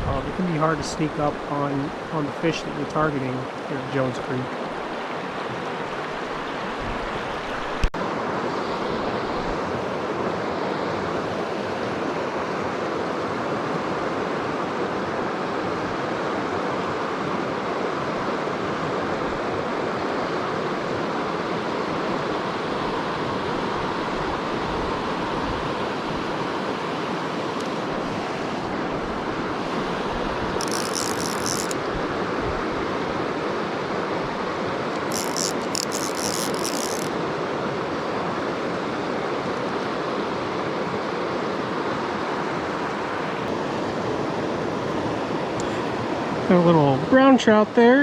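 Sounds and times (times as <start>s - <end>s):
short high-pitched rattle: 30.6s - 31.8s, 35.0s - 37.1s.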